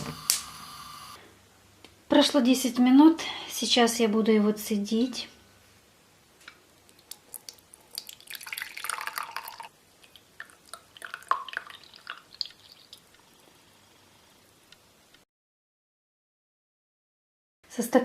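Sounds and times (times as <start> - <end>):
liquid dripping: 6.8 - 14.0
liquid poured through strainer: 7.0 - 13.4.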